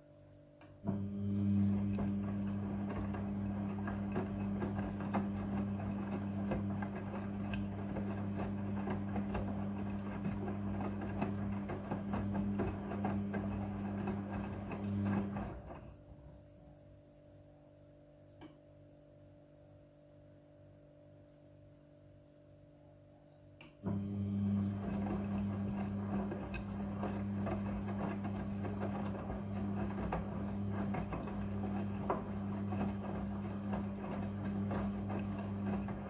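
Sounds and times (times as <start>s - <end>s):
small click: 0.6s - 0.8s, 18.4s - 18.6s, 23.6s - 23.8s
washing machine motor humming: 0.8s - 16.4s, 23.8s - 36.0s.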